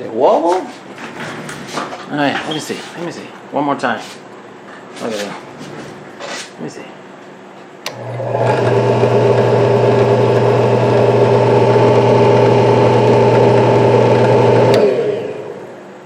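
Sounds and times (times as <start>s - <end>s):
drill press switch click: 7.8s - 8.1s
drill press motor humming and whining: 7.8s - 16.0s.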